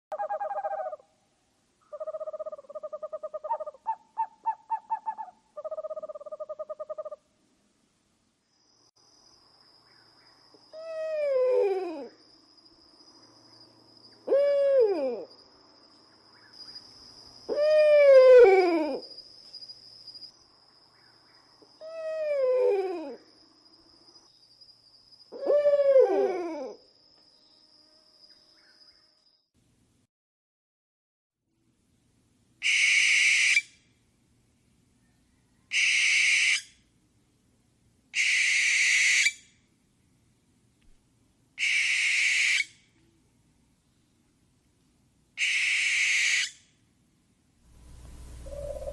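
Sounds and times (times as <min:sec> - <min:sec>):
owl trilling: 0:00.1 - 0:01.1, 0:01.8 - 0:07.2, 0:32.6 - 0:33.7, 0:35.6 - 0:36.8, 0:38.2 - 0:39.5, 0:41.6 - 0:42.8, 0:45.4 - 0:46.6, 0:47.9 - 0:48.9.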